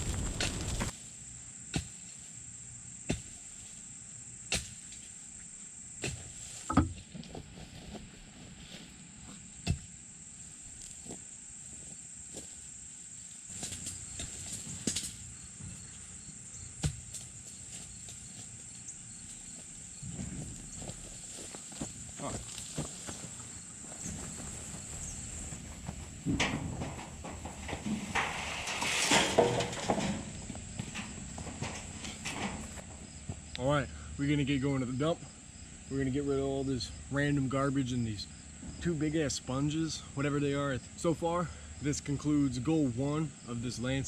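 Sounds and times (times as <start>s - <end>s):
sharp pops and knocks: 0.0s - 0.9s.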